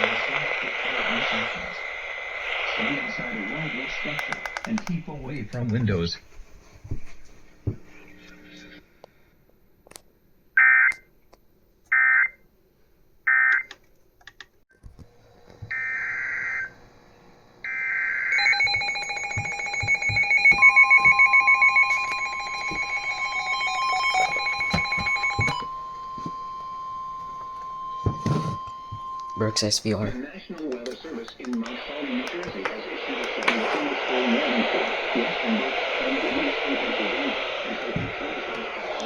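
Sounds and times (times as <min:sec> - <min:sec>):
warbling data tone bursts: 0:18.3 - 0:30.2
steady attention tone: 0:18.3 - 0:39.0
steady alert tones: 0:18.4 - 0:30.2.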